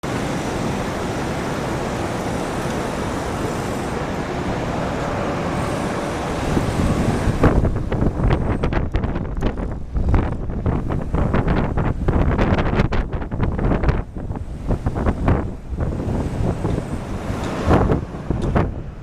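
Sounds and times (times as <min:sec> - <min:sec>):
jet engine rushing: 0:00.0 - 0:19.0
wind buffeting microphone: 0:00.0 - 0:19.0.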